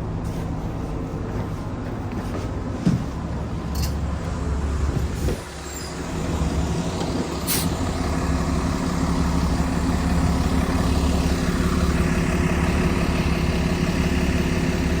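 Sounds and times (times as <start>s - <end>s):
bus engine hum from inside: 0.0s - 15.0s.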